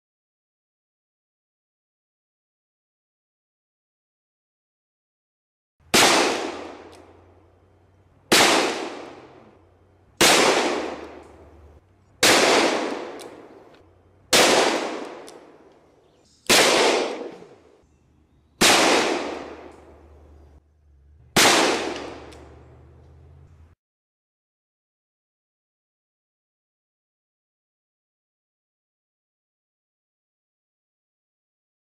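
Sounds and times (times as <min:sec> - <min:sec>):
handgun shots echoing: 0:05.9 - 0:07.2, 0:08.3 - 0:09.4, 0:10.2 - 0:11.6, 0:12.2 - 0:17.6, 0:18.6 - 0:20.1, 0:21.4 - 0:22.6.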